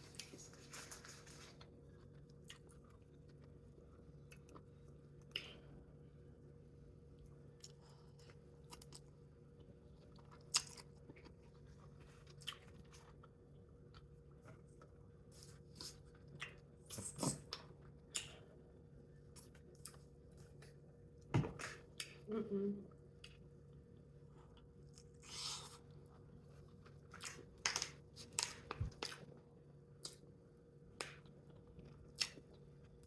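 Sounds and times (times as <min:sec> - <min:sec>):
faint steady hum: 0:00.0 - 0:33.0
chewing and mouth sounds: 0:07.6 - 0:14.1
person humming: 0:22.3 - 0:22.9.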